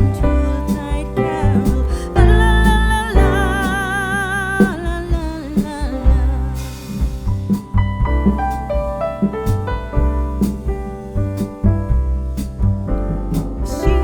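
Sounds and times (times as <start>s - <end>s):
person singing with vibrato: 0.0s - 7.0s
instrumental accompaniment with bass: 0.0s - 14.0s.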